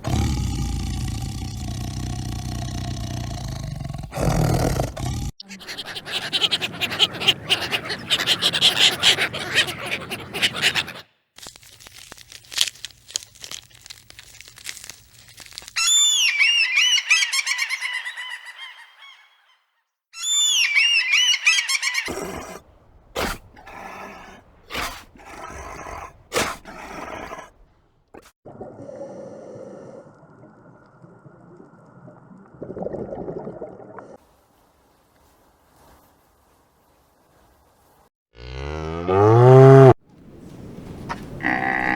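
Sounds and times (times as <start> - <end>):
animal sounds: 0.0 - 11.1, 41.1 - 41.9
high-pitched bird calls: 15.8 - 19.6, 20.2 - 22.1.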